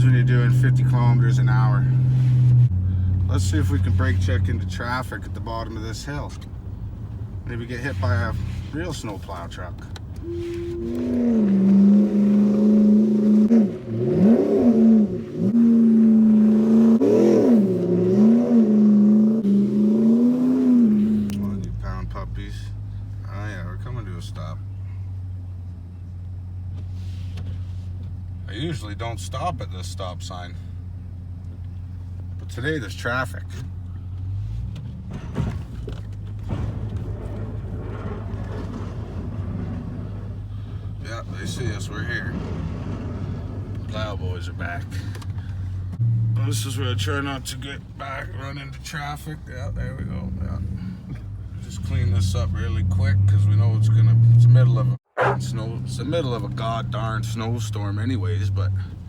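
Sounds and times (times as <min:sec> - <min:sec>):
truck engine revving: 0:00.0 - 0:22.2, 0:34.2 - 0:59.0
road noise: 0:00.0 - 0:59.0.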